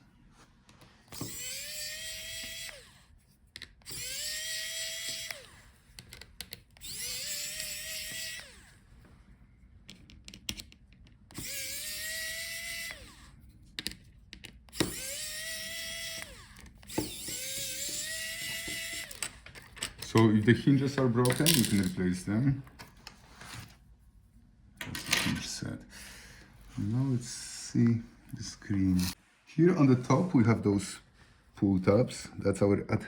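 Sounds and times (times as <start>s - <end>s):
electric screwdriver whining: 1.1s - 3.1s, 3.8s - 8.8s, 11.3s - 13.3s, 14.7s - 19.7s.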